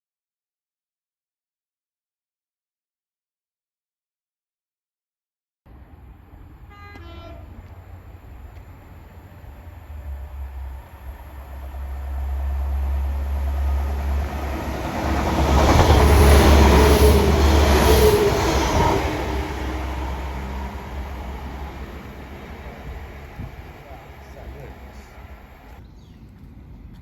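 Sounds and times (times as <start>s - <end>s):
steady low drone: 5.7s - 25.8s
train running through station: 5.7s - 25.9s.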